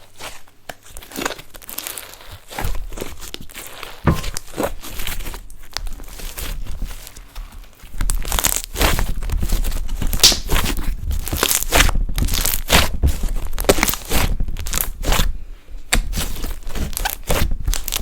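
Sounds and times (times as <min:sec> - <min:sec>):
slime crackling and popping: 0:00.7 - 0:15.2, 0:15.9 - 0:18.0.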